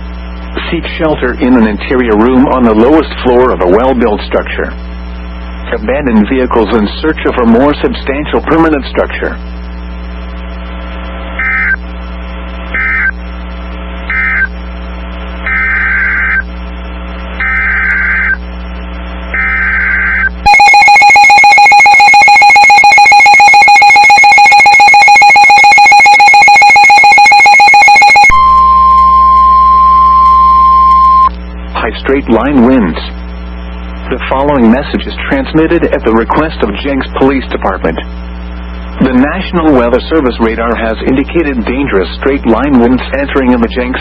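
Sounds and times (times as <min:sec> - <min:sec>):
raspy digital data bursts: 0:14.0 - 0:14.6, 0:15.3 - 0:16.6, 0:17.2 - 0:31.3
two-tone attention signal: 0:19.4 - 0:31.3
single steady tone: 0:20.2 - 0:31.4.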